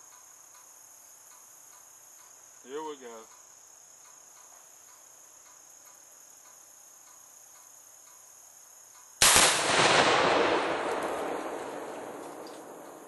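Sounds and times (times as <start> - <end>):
insects chirping: 0.0 - 13.0
explosion boom: 9.2 - 13.0.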